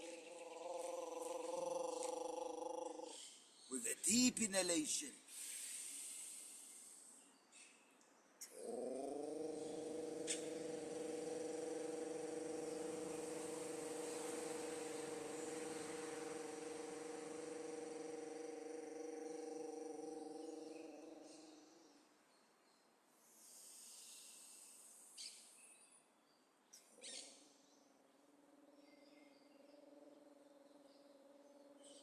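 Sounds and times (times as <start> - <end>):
long held vocal tone: 0.0 - 3.2, 8.5 - 21.2.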